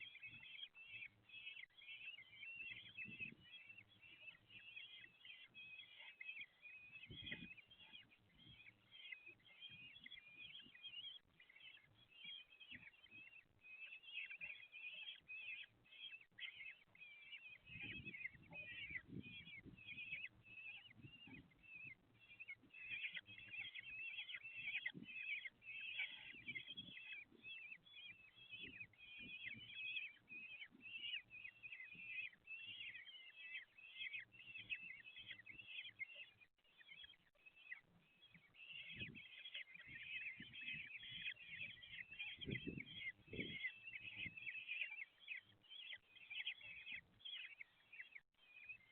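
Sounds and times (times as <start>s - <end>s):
bird chicks chattering: 0.0s - 48.9s.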